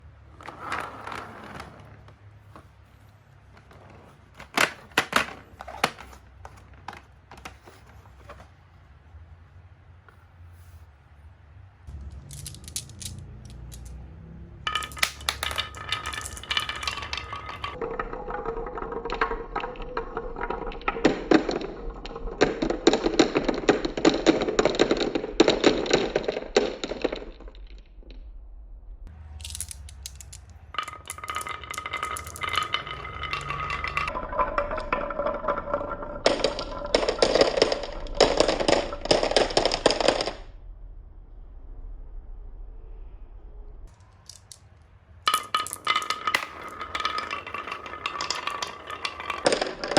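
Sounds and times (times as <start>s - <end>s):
marbles rolling down wooden run: 0.1s - 8.4s, 11.9s - 28.2s, 29.4s - 40.5s, 44.0s - 49.9s.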